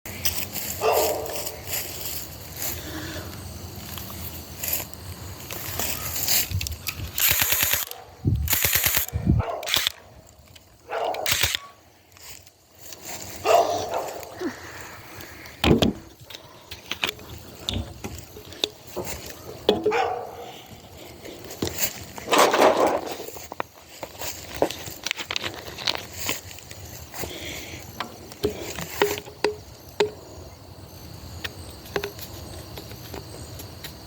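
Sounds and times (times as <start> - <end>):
gel-ball blaster rapid shots: 7.2 - 9.1
scattered clicks and knocks: 28.0 - 30.2, 31.4 - 34.0.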